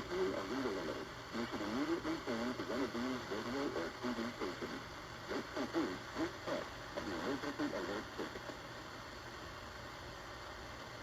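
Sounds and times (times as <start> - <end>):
faint muffled broadcast speech: 0.0 - 8.7
steady hiss: 0.0 - 11.0.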